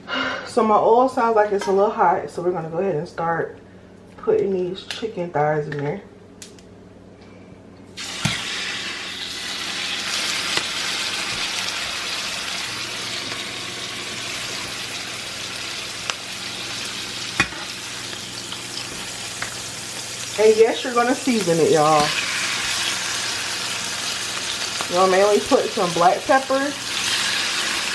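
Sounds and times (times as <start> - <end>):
chicken sizzling in hot oil: 8.0 - 27.9.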